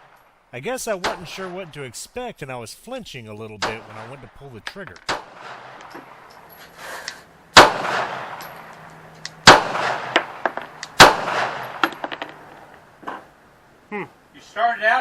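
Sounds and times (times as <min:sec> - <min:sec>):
pistol shots with echo: 0:03.6 - 0:06.3, 0:07.5 - 0:12.2.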